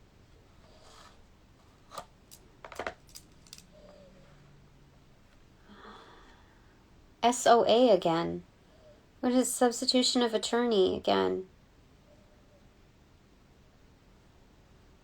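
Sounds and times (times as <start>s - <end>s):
small objects clicking and tapping: 1.9s - 3.7s.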